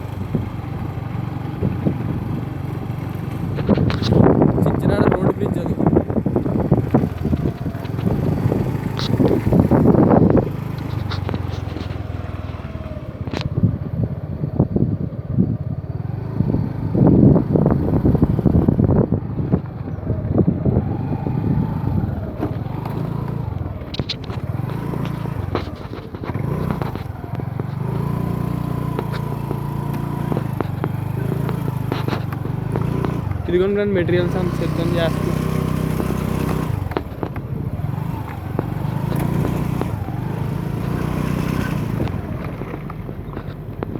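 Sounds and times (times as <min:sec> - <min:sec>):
traffic rumble: 0:00.0 - 0:43.9
vehicle engines revving: 0:00.0 - 0:43.9.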